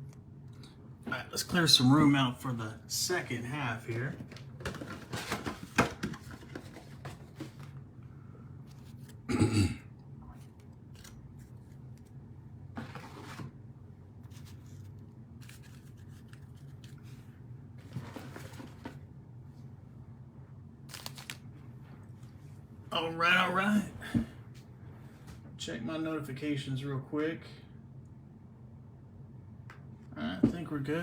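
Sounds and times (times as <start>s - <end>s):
cards clicking and rustling: 3.9s - 7.8s, 8.7s - 9.3s, 10.4s - 12.2s, 14.2s - 17.2s, 20.9s - 21.5s.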